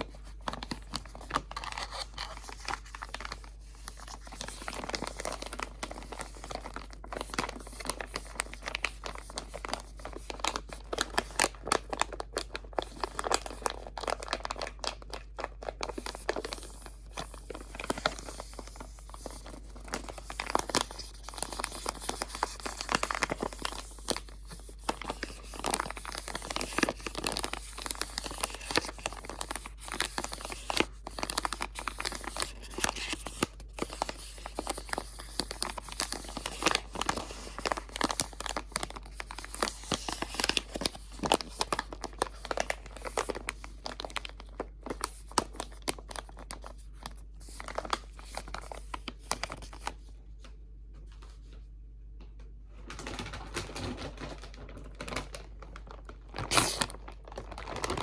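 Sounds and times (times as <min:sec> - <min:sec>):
material crinkling and crumpling: 0:00.0 - 0:50.1, 0:52.9 - 0:58.0.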